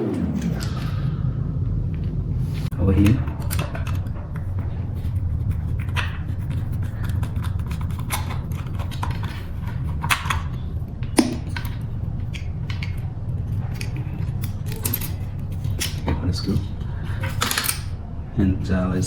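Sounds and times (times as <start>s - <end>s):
low hum: 0.0s - 19.0s
tools clicking and knocking: 3.0s - 13.1s, 13.7s - 16.2s, 17.2s - 18.0s.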